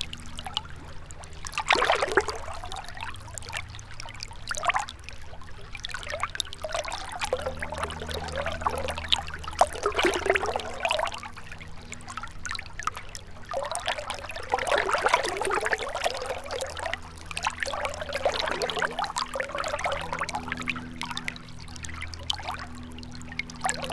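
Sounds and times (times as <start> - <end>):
faint low hum: 0.0 - 23.9
river water trickling: 0.0 - 23.9.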